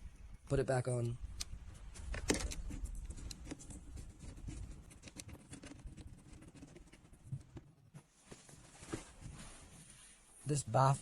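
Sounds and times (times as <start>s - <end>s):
clicks and scratching on plastic trim: 2.0s - 7.8s.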